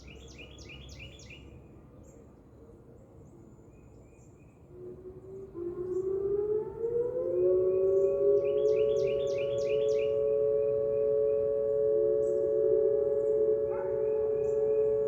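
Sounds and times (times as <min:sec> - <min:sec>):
tornado warning siren: 0:04.6 - 0:15.0
birds chirping: 0:07.6 - 0:11.6.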